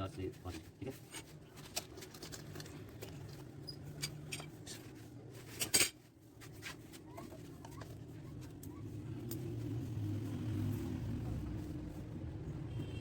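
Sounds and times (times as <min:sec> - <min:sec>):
tools and pipe parts clinking: 0:01.1 - 0:06.1.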